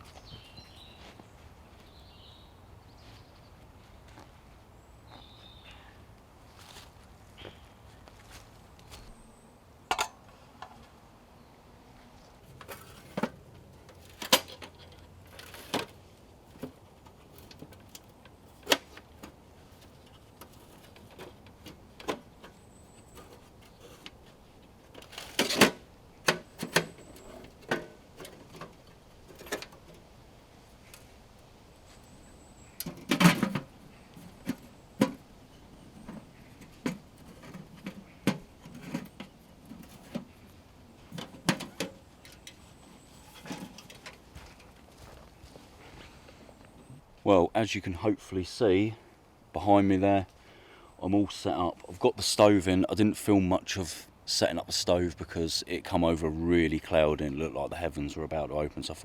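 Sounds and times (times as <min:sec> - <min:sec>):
camping gear clattering: 0:09.9 - 0:10.8, 0:12.4 - 0:31.2, 0:31.8 - 0:46.6.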